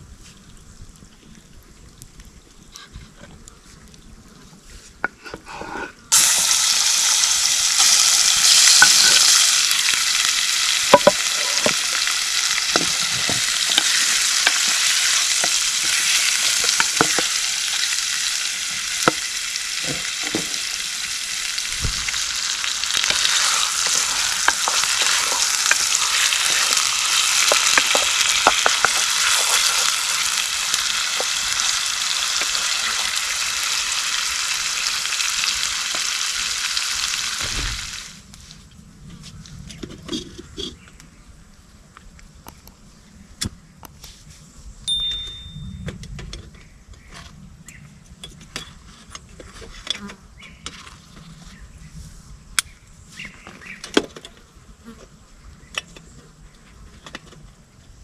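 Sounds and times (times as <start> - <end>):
food sizzling in hot fat: 6.1 - 38.6
utensil clicks and knocks: 23.0 - 29.9.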